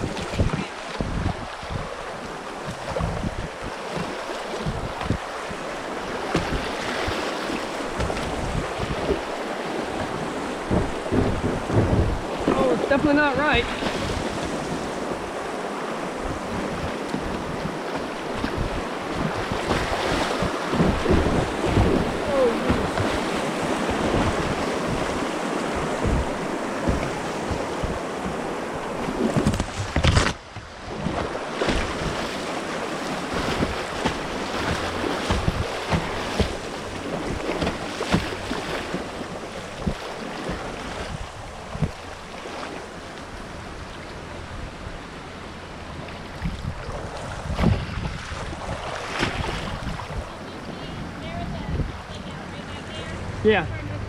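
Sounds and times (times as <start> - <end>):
wind buffeting microphone: 0.0 - 42.6, 45.8 - 54.0
kayak paddle splashes: 0.0 - 54.0
rushing whitewater: 0.0 - 54.0.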